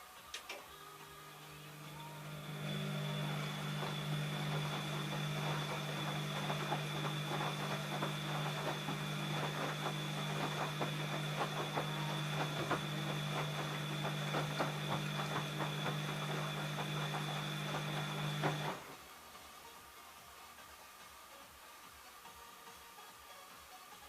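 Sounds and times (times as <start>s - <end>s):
washing machine motor hum: 0.6s - 19.1s.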